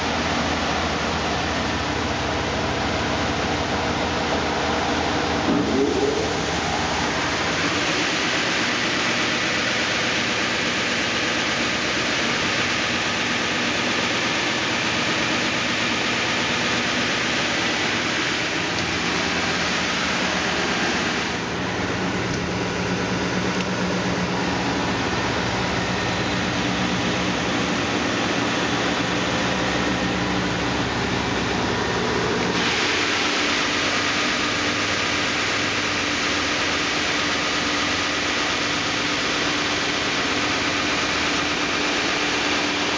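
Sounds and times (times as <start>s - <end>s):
low machine hum: 0.0s - 42.9s
planer head whirring hiss: 32.2s - 36.4s.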